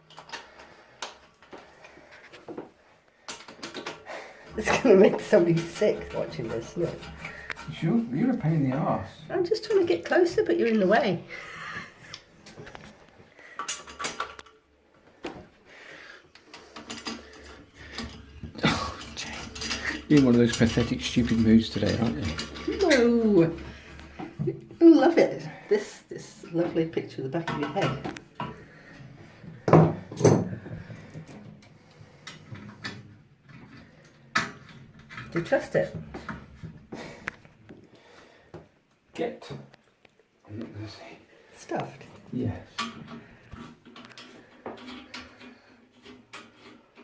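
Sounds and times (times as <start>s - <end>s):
metal tools clinking on pipe: 16.5s - 23.7s.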